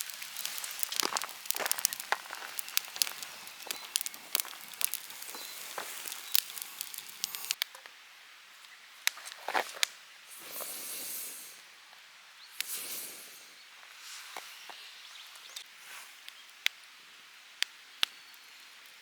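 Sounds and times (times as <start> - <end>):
wood fire crackling and popping: 0.0 - 7.8
soft hiss: 0.0 - 19.0.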